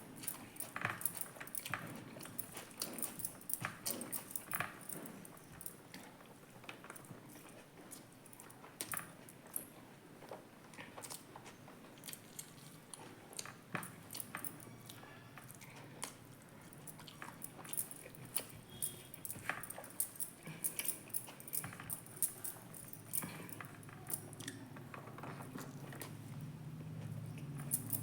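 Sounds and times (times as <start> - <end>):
person chewing and crunching: 12.0 - 14.3, 16.8 - 19.1.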